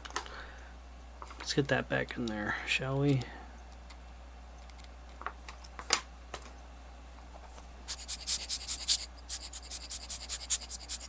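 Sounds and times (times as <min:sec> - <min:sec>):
scratchy strokes: 0:07.9 - 0:11.0.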